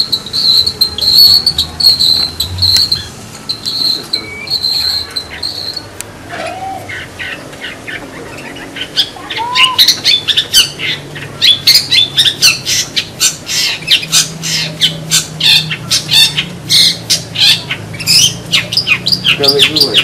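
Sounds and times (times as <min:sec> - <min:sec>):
shrike harsh chattering: 0:00.0 - 0:06.0.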